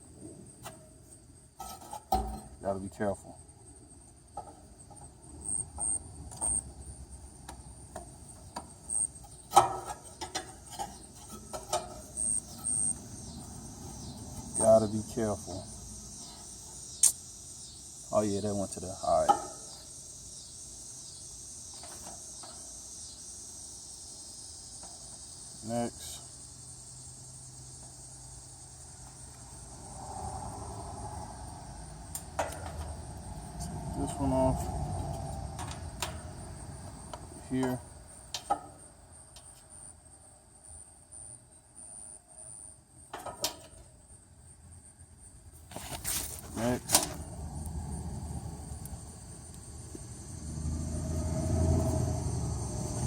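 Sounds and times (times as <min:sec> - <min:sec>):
high insect chirps: 0:00.0 - 0:53.0
sharp click: 0:17.0 - 0:17.2.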